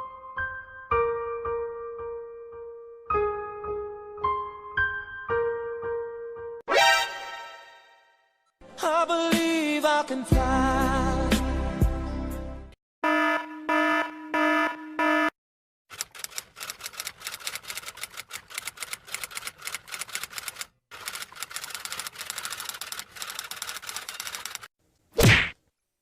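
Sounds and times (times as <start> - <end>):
rapid typing clicks: 15.9 - 24.7.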